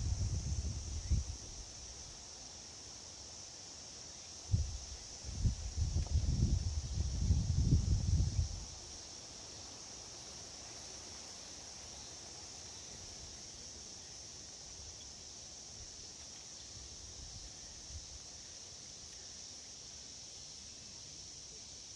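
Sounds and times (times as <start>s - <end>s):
wind buffeting microphone: 0.0s - 1.4s, 4.5s - 8.6s.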